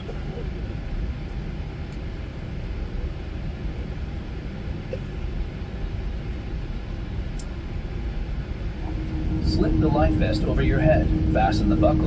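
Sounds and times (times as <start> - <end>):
airliner cabin rumble: 0.0 - 12.0.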